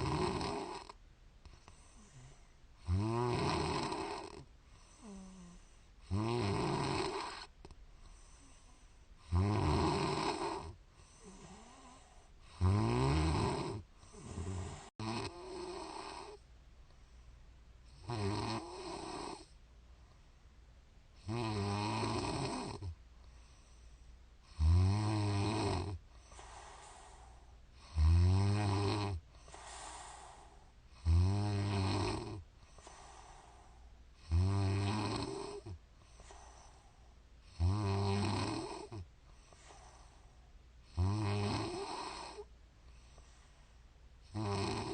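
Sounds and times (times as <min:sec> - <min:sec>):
woman snoring: 0:00.0 - 0:01.0, 0:01.6 - 0:07.6, 0:08.3 - 0:16.4, 0:17.9 - 0:19.5, 0:21.2 - 0:23.0, 0:24.5 - 0:36.8, 0:37.5 - 0:39.1, 0:40.9 - 0:42.5, 0:44.3 - 0:44.9.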